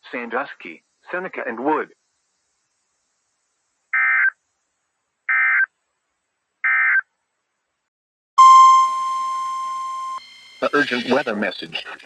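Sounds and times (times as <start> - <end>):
steady warning alarm tone: 8.4 - 11.1
digital data tone bursts: 8.4 - 11.6.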